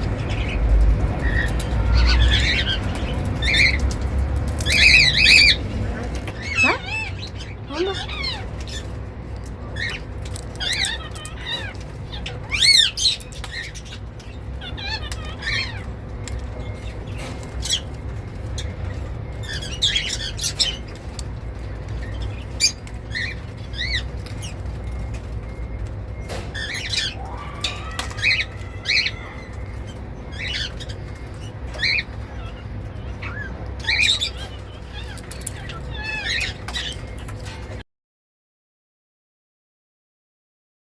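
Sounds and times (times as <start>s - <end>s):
parrot chirps and squawks: 4.6s - 9.0s, 9.6s - 24.7s, 26.5s - 37.8s.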